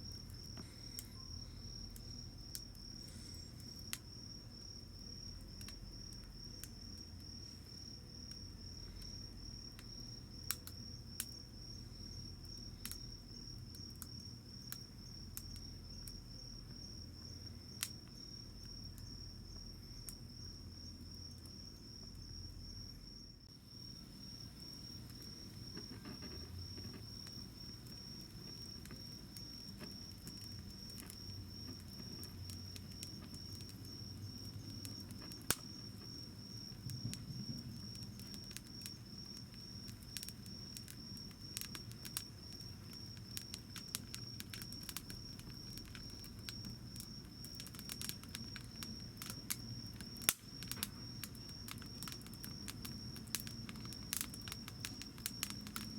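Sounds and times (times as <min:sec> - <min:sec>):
wood fire crackling and popping: 0:00.0 - 0:22.7, 0:23.4 - 0:55.9.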